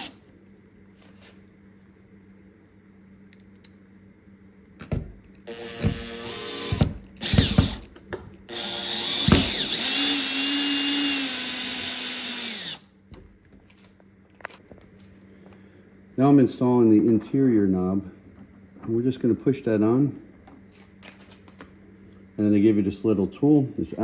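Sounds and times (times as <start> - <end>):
cordless drill driving screws: 5.5 - 7.9, 8.5 - 12.9.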